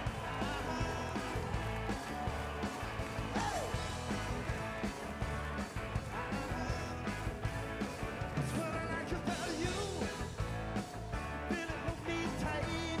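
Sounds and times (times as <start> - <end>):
guitar: 0.0 - 13.0
rock and roll music: 0.0 - 13.0
steady drum beat: 0.0 - 13.0
person singing: 6.1 - 7.2, 8.4 - 10.3, 11.4 - 13.0.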